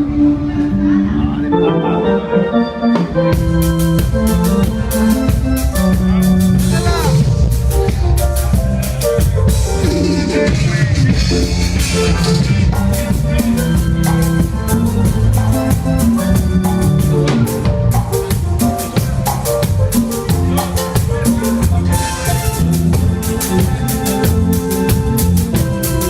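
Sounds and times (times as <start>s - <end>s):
band playing: 0.0s - 26.0s
keyboard chords: 0.0s - 26.0s
drum kit and percussion: 3.0s - 26.0s.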